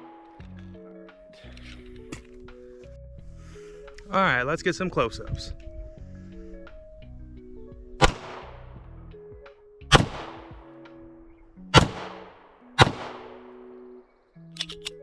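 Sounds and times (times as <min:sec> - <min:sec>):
background music: 0:00.0 - 0:15.0
pistol shots with ringing tail: 0:08.0 - 0:08.8, 0:09.9 - 0:10.8, 0:11.7 - 0:13.8.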